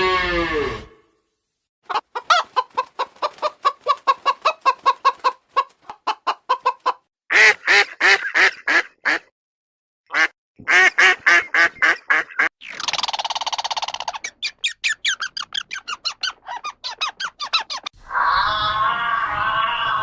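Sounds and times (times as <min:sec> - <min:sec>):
chicken clucking: 0:01.9 - 0:07.1
duck quacking: 0:07.3 - 0:09.3, 0:10.1 - 0:12.5.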